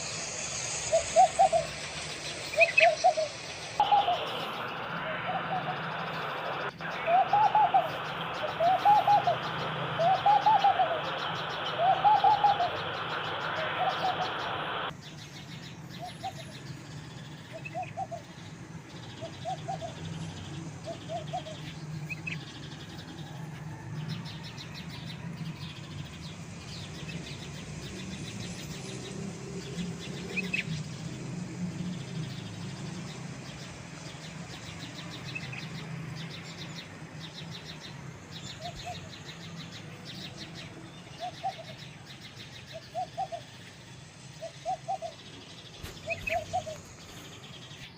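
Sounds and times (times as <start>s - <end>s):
steady low hum: 0.0s - 47.9s
dove cooing: 2.6s - 14.9s, 19.2s - 20.0s, 20.8s - 21.7s, 42.7s - 43.6s, 45.8s - 46.9s.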